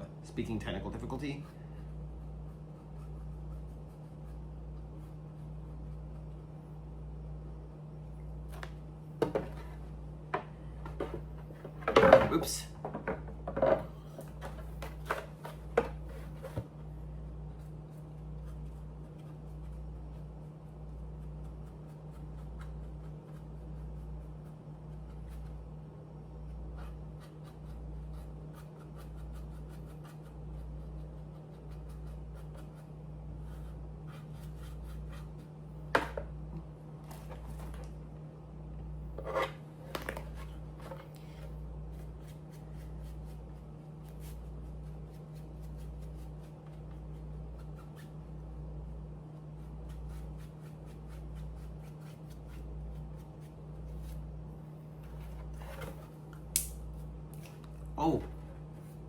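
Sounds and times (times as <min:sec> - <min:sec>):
faint rubbing and scratching: 0:01.0 - 0:06.4.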